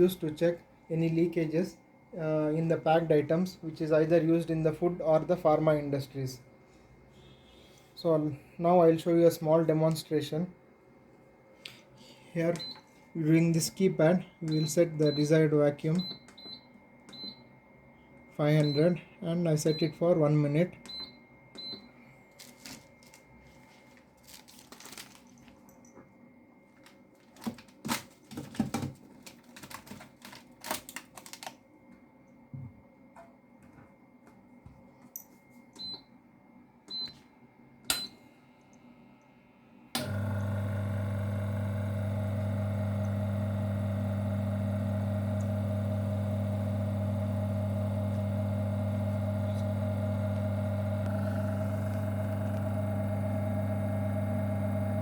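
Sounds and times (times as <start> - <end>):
vacuum pump humming: 40.0 - 55.0.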